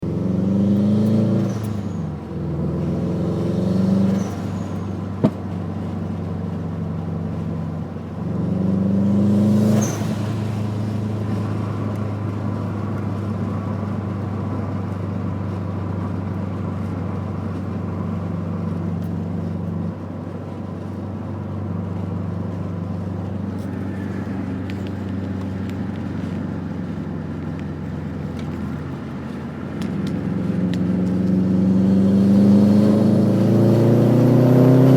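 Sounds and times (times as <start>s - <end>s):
car engine revving: 0.0s - 5.4s, 8.2s - 19.5s, 21.5s - 34.9s
exhaust pop: 5.2s - 5.6s.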